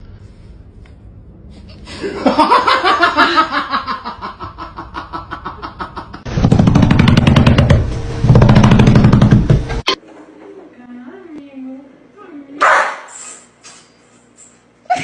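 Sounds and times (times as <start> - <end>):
rhythmic laughter: 1.9 - 6.3.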